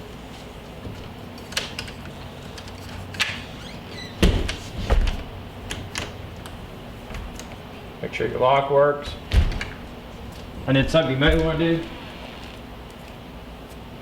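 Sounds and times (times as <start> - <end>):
heavy thumps: 9.1 - 12.7.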